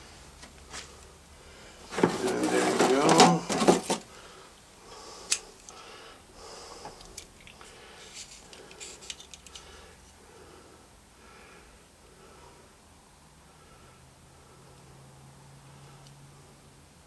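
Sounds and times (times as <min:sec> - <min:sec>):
faint close breathing: 0:00.0 - 0:16.7.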